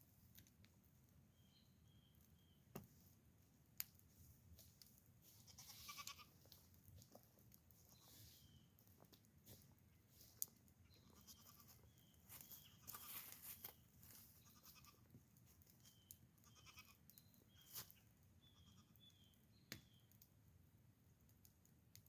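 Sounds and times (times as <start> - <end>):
soft clicks and rustles: 3.8 - 16.2
goats bleating: 5.5 - 6.3.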